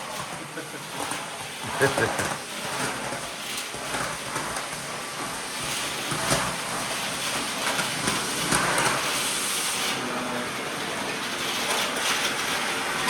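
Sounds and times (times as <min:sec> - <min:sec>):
vacuum cleaner running: 0:00.0 - 0:13.0.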